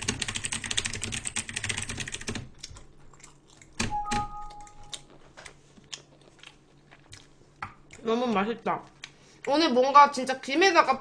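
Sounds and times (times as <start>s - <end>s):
typing on computer keyboard: 0.0s - 2.5s
short electronic beep: 3.9s - 5.0s.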